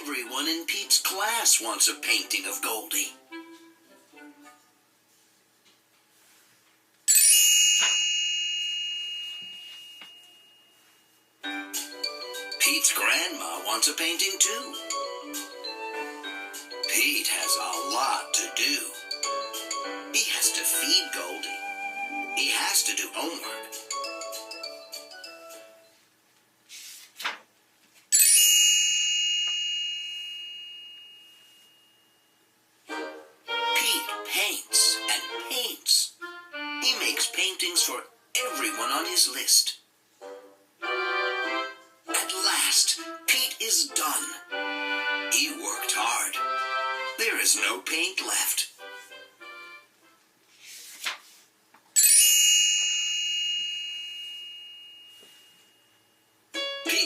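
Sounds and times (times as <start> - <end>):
bell-like chime ringing: 7.1 - 13.1, 28.1 - 32.5, 52.0 - 56.3.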